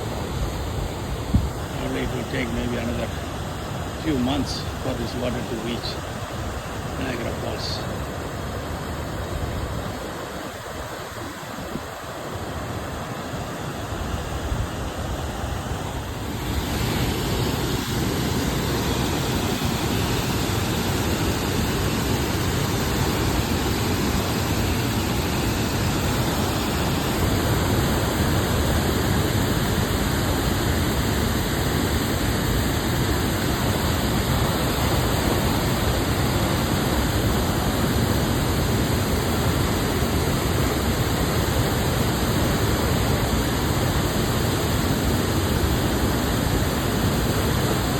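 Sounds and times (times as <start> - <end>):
floodwater rushing through spillway: 0.0 - 47.9.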